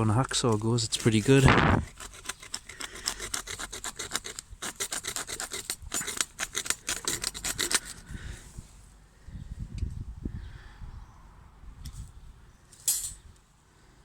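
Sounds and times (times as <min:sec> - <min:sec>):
small saw blade rasping: 0:00.5 - 0:08.1.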